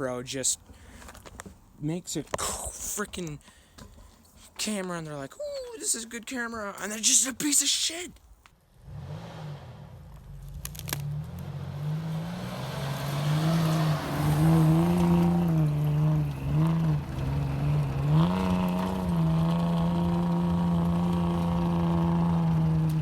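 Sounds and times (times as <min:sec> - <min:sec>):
motorcycle engine revving: 0:08.9 - 0:23.0.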